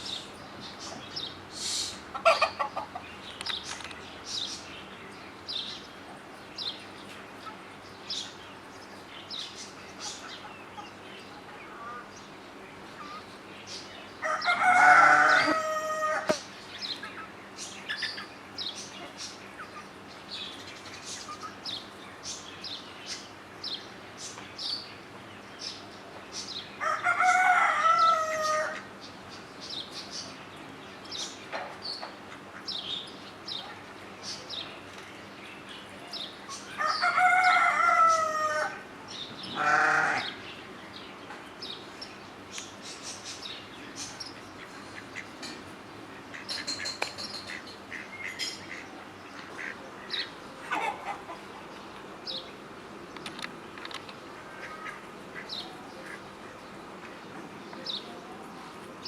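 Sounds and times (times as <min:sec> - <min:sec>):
small birds chirping: 0:00.0 - 0:26.8, 0:28.0 - 0:38.3, 0:39.0 - 0:59.0
rooster crowing: 0:14.2 - 0:16.4, 0:26.8 - 0:28.8, 0:36.8 - 0:38.8.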